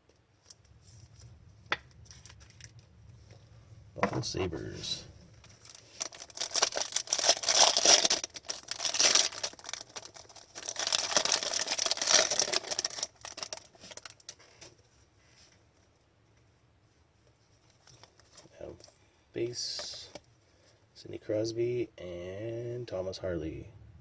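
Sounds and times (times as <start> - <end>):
foil wrapper crinkling: 0.4 - 2.9, 5.3 - 14.8, 17.7 - 18.5.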